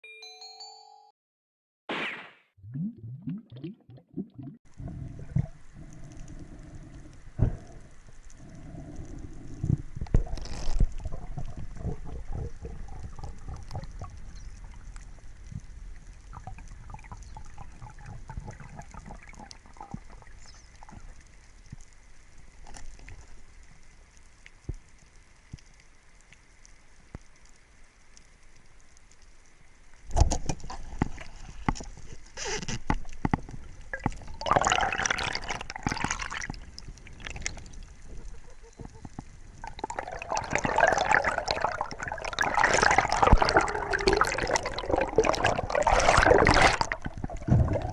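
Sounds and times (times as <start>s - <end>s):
water gurgling and sloshing: 2.6s - 23.6s, 30.1s - 47.9s
small crackling clicks: 7.1s - 17.3s, 18.4s - 34.3s.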